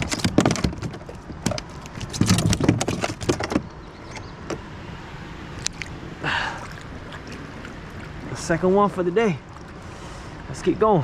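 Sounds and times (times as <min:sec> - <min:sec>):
fishing gear clicks and rattles: 0:00.0 - 0:04.3.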